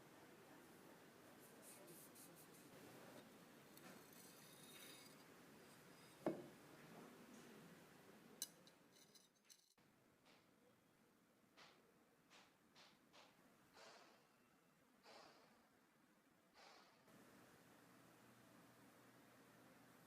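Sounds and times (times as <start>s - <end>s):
faint rubbing and handling: 1.3s - 6.2s.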